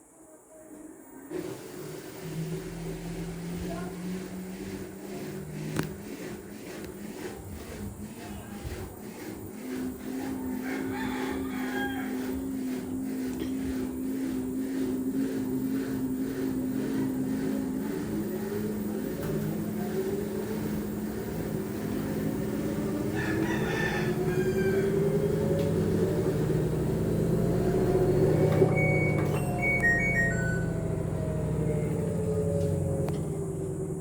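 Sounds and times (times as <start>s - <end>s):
washing machine drum motor whine: 1.3s - 34.0s
short high tones: 28.7s - 31.9s.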